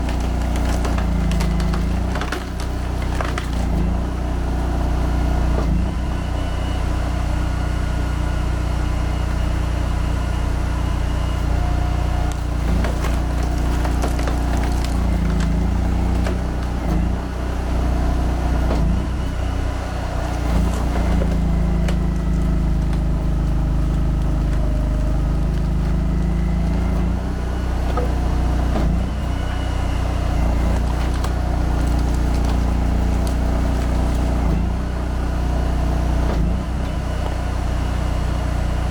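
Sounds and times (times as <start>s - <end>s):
logs cracking as they split: 0.0s - 4.3s, 12.1s - 17.2s, 19.7s - 35.0s
log splitter engine running: 0.0s - 38.9s.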